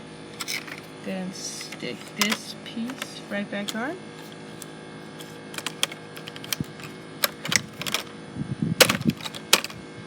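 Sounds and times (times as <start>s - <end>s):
hard plastic parts clicking: 0.4s - 0.9s, 1.6s - 8.1s, 8.8s - 9.8s.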